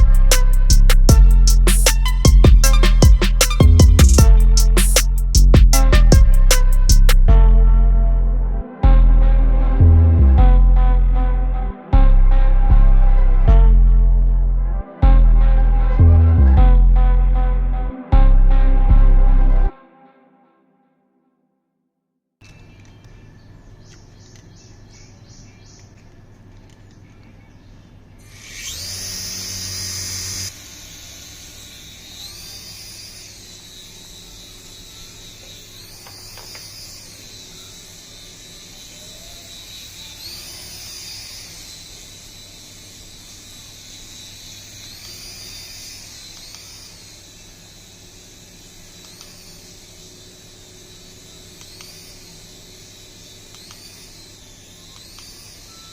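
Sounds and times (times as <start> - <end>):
rc helicopter motors whining: 0.0 - 7.3, 28.2 - 55.9.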